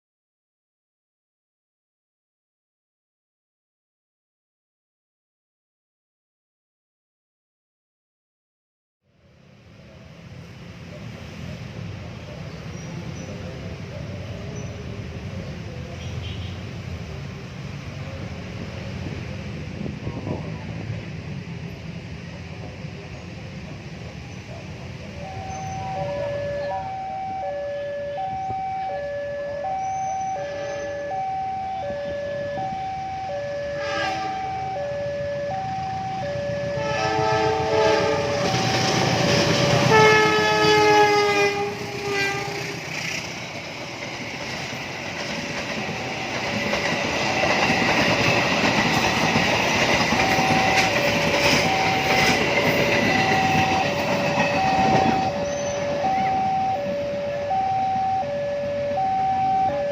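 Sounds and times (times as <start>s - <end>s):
train wheels rumbling on rails: 9.9s - 27.3s, 29.6s - 59.0s
train horn: 25.2s - 43.0s, 50.2s - 59.1s.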